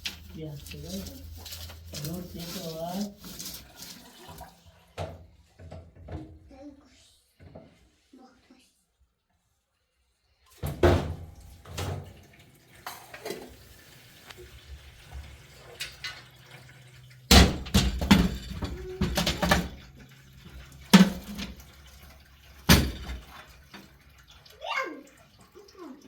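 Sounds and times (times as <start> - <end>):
hard objects knocking and clattering: 17.3 - 21.8, 22.6 - 23.4.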